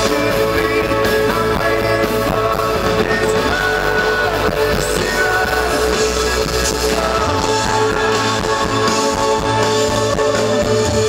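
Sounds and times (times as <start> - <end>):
guitar: 0.0 - 11.0
person singing: 0.0 - 11.0
rock band playing live: 0.0 - 11.0.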